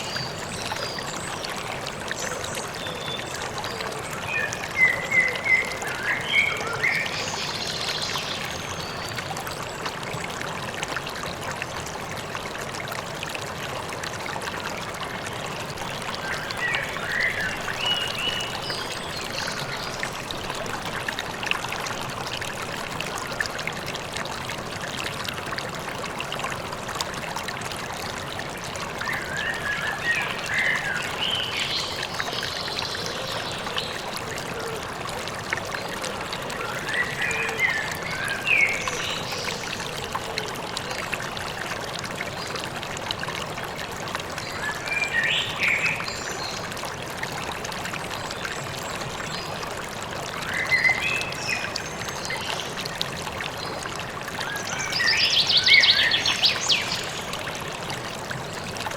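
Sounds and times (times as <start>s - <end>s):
stream flowing: 0.0s - 58.9s.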